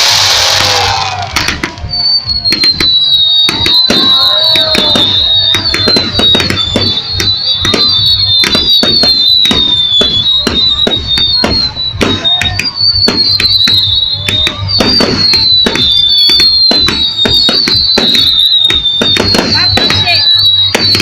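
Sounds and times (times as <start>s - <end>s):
loud hiss: 0.0s - 1.9s
fireworks bangs and crackles: 0.0s - 21.0s
high wavering whistle: 0.0s - 21.0s.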